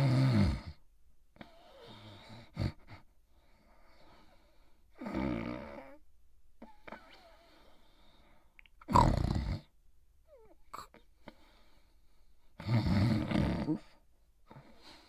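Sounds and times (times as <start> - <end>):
loud snoring: 0.0 - 0.8, 5.0 - 6.0, 8.9 - 9.7, 12.6 - 14.0
faint breathing: 1.4 - 5.0, 6.6 - 8.6, 11.0 - 12.6, 13.8 - 15.0.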